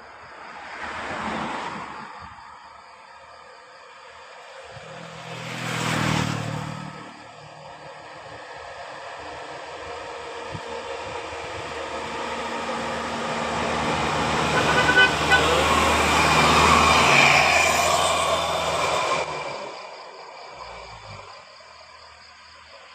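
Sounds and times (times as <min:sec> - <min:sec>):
bus engine and road noise: 0:00.0 - 0:22.9
bus horn toots: 0:14.0 - 0:16.6.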